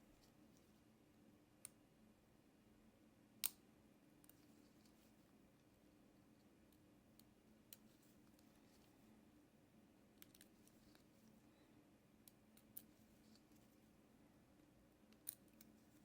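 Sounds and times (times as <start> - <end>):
low steady hum: 0.0 - 16.0.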